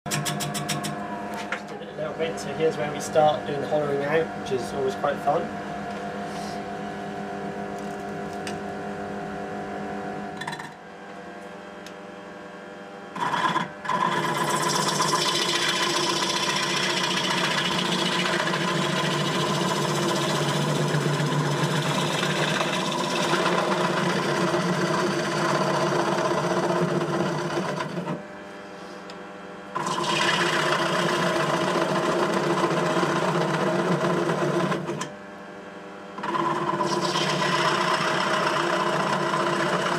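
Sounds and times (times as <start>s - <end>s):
lathe motor humming: 13.1s - 28.6s, 29.7s - 35.1s, 36.1s - 39.9s.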